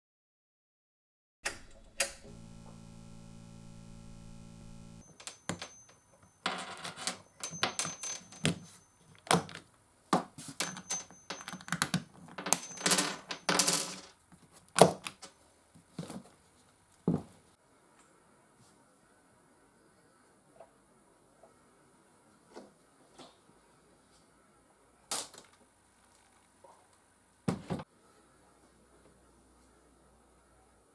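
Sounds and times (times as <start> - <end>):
low hum: 2.2 - 5.0.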